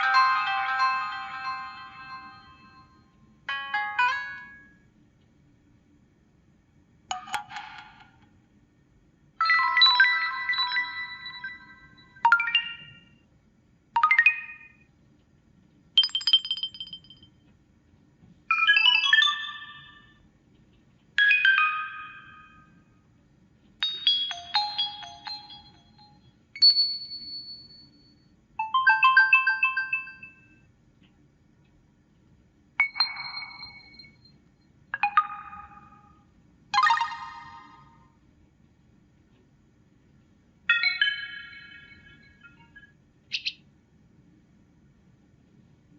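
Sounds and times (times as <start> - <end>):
phone ringtones and alert tones: 0.0 - 4.8, 7.1 - 8.2, 9.4 - 13.2, 14.0 - 14.9, 18.5 - 20.2, 21.2 - 22.9, 23.8 - 26.3, 28.6 - 30.6, 32.8 - 34.2, 35.0 - 36.2, 36.8 - 38.1, 40.7 - 43.5.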